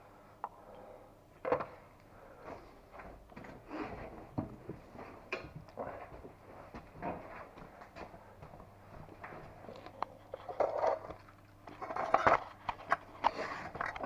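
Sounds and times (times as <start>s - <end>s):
scuffing footsteps: 2.4s - 9.8s.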